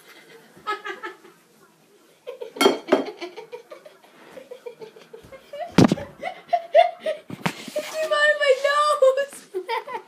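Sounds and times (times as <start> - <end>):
people giggling and laughing: 2.3 - 7.4, 9.5 - 10.0.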